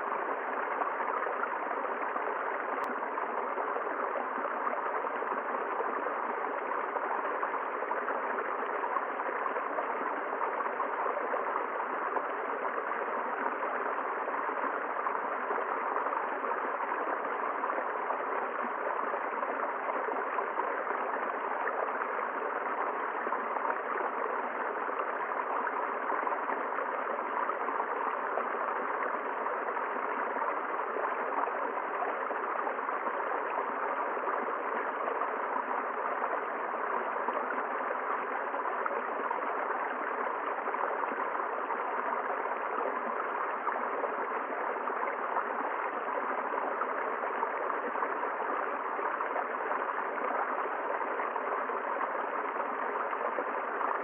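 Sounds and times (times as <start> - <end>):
river flowing over rocks: 0.0 - 54.0.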